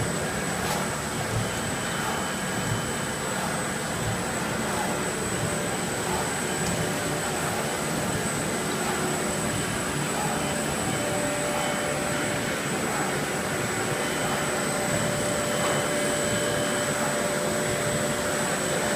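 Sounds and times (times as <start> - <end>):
machine drone with whine: 0.0 - 18.9.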